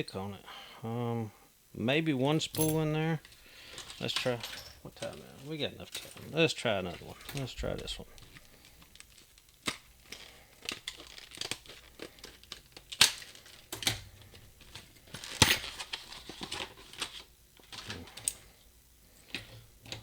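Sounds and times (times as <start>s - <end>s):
padlocks and lock picks clicking: 2.5s - 5.1s.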